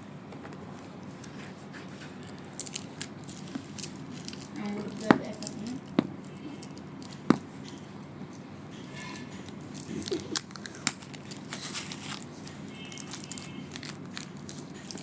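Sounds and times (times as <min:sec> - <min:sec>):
packaging crinkling and tearing: 0:02.2 - 0:07.8, 0:09.7 - 0:15.0.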